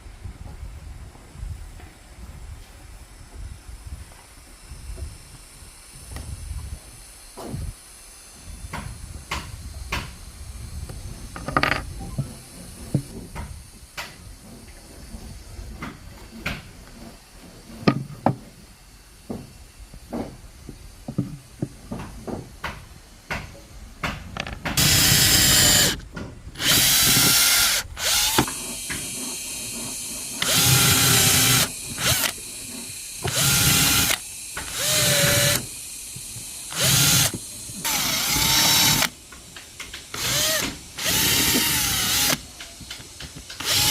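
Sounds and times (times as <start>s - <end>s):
electric drill whine: 4.4s - 14.6s, 24.4s - 43.9s.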